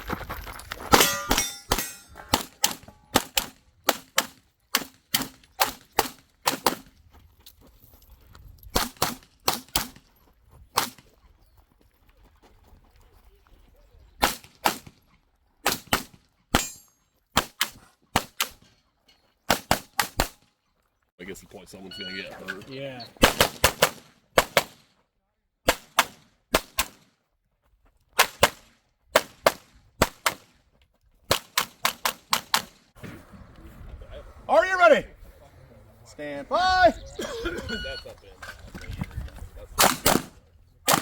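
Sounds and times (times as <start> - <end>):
pistol shots: 23.2 - 24.8, 25.6 - 27.0, 39.8 - 41.0.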